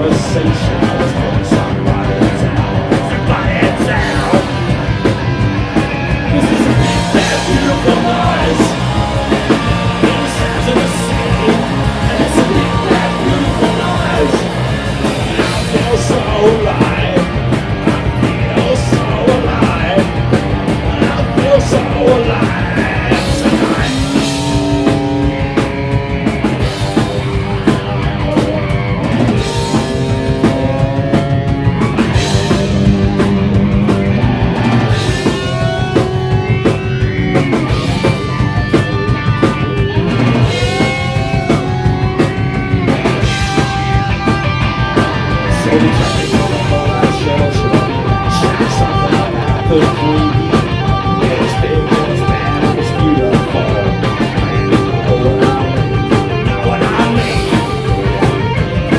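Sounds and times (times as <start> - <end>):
bass guitar: 0.0 - 58.9
distorted electric guitars: 0.0 - 58.9
drum kit: 0.0 - 58.9.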